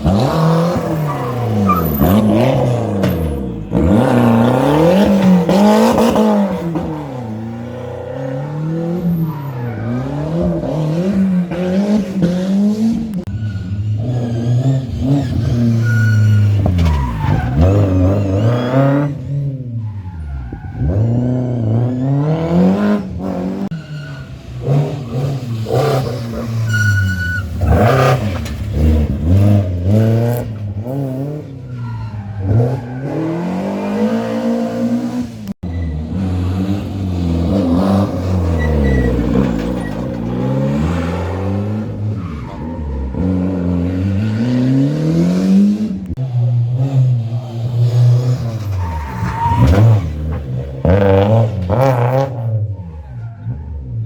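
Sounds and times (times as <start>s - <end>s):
rally car engine revving: 0.0s - 54.0s
tyres squealing: 0.1s - 10.2s, 13.3s - 22.4s, 23.7s - 29.4s, 35.6s - 43.8s.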